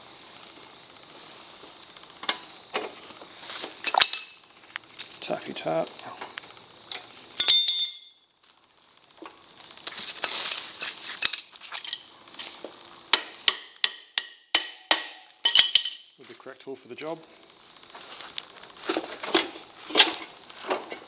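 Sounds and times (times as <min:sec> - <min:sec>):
hammer tapping on steel: 0:13.2 - 0:15.2.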